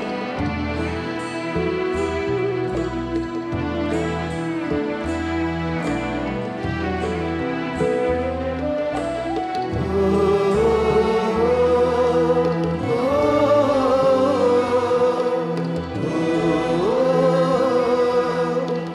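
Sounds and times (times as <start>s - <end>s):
person singing slow melody: 9.5s - 18.9s.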